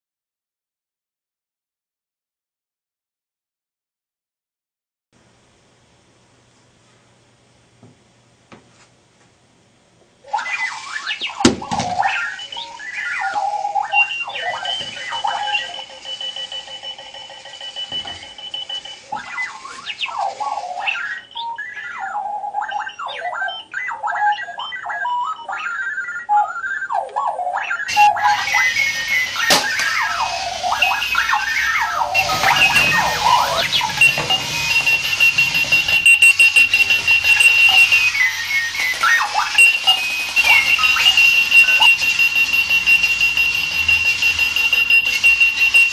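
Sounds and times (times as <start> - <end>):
warbling electronic alarm beeps: 10.3 - 45.9.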